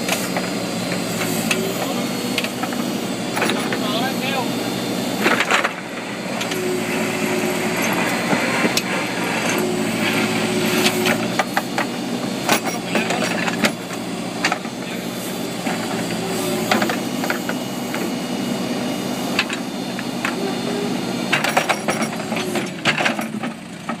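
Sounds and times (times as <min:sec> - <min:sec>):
backhoe diesel engine running: 0:00.0 - 0:24.0
sharp knocks and clanks: 0:02.3 - 0:03.9, 0:10.8 - 0:14.8, 0:21.3 - 0:24.0.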